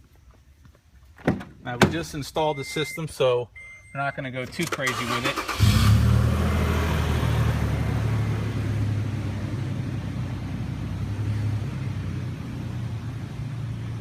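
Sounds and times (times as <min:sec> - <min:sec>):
engine exhaust drone: 0:05.5 - 0:14.0.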